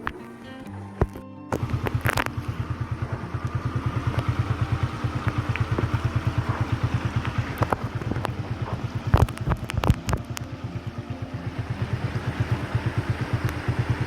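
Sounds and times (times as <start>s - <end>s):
small engine running: 0.6s - 14.0s.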